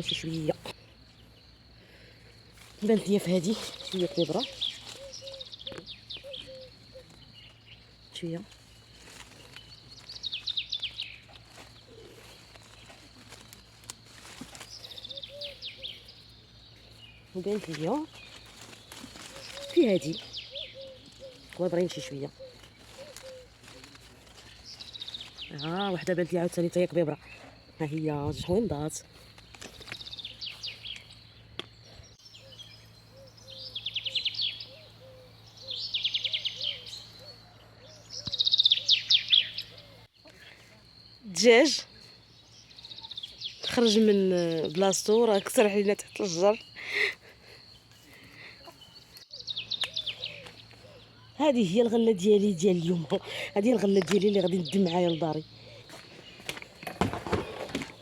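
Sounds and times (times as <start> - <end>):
soft low bird chirp: 0.0 - 58.0
bird trilling: 3.5 - 7.8, 14.7 - 16.2, 17.9 - 25.6, 32.2 - 40.1, 48.5 - 51.4
songbird whistling: 3.8 - 7.8, 14.8 - 16.2, 19.3 - 21.4, 32.2 - 40.1, 48.9 - 51.3.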